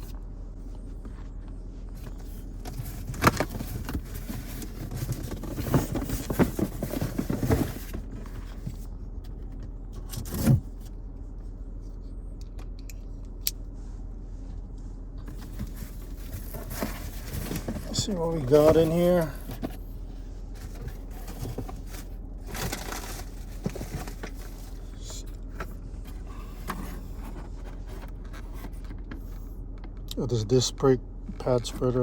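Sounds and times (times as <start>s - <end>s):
steady low hum: 0.0s - 32.0s
cardboard box rustling and scraping: 0.8s - 10.9s, 15.2s - 29.5s.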